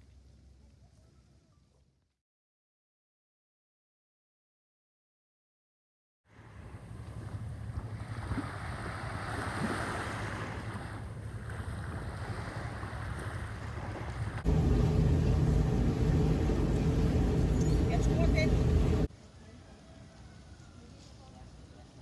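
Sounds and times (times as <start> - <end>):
wind and water noise: 6.3 - 19.1
engine drone: 14.0 - 19.1.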